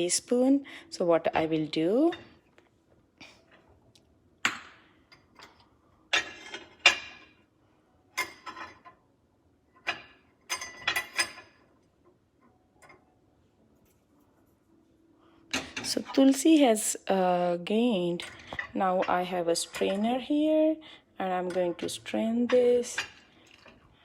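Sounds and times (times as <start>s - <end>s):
kitchen utensils and dishes clinking: 4.4s - 7.4s, 8.1s - 9.0s, 9.7s - 11.8s, 15.5s - 17.0s, 17.9s - 20.6s, 21.2s - 24.0s.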